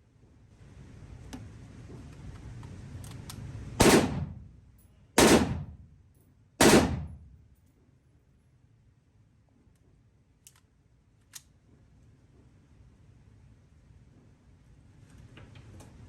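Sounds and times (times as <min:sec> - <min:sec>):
rifle shots with echo: 0:03.8 - 0:04.5, 0:05.2 - 0:05.9, 0:06.6 - 0:07.4.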